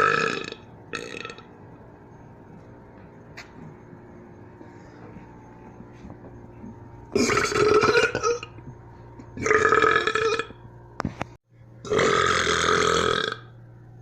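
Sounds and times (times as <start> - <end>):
person burping: 0.0 - 1.4, 7.2 - 8.5, 9.4 - 10.5, 11.9 - 13.4.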